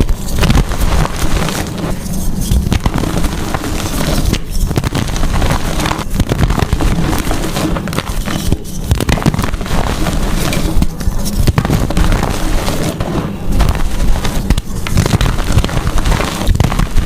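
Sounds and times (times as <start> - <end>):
chalk being crushed: 0.0 - 17.0.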